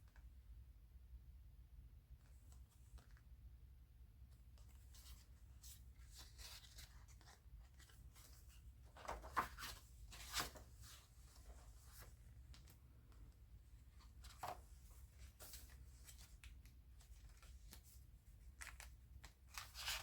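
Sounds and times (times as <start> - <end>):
paper pages rustling: 4.7 - 12.8, 14.0 - 20.0
paper crackling: 6.0 - 12.8, 15.2 - 20.0.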